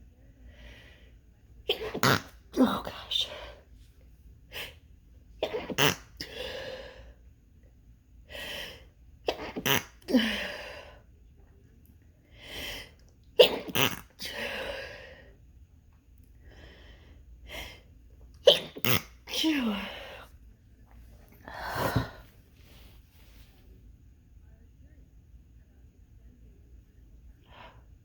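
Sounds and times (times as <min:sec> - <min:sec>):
person sneezing: 0:05.4 - 0:06.4, 0:09.3 - 0:10.5, 0:13.4 - 0:14.5, 0:18.4 - 0:19.9.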